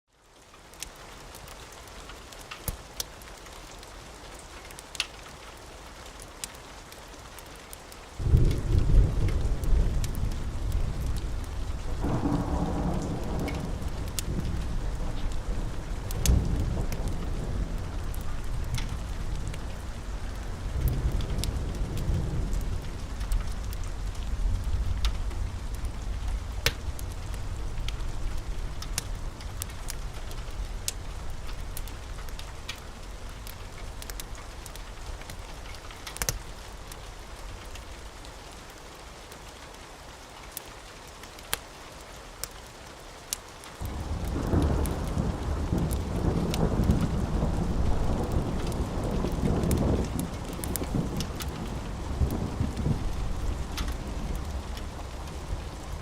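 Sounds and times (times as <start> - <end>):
steady rain: 0.1 - 56.0
wood fire crackling and popping: 0.4 - 39.7, 40.4 - 56.0
rolling thunder: 8.2 - 35.2, 43.8 - 56.0.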